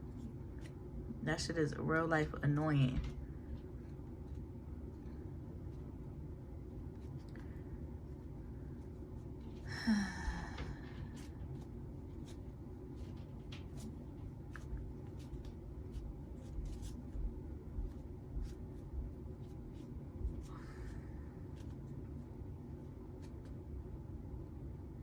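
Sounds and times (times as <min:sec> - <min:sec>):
person sighing: 0:09.6 - 0:10.9.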